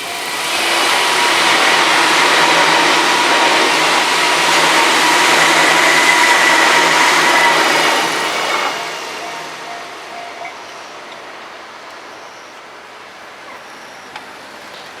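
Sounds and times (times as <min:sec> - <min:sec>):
high whine: 0:00.0 - 0:11.4
train passing at speed: 0:00.0 - 0:15.0.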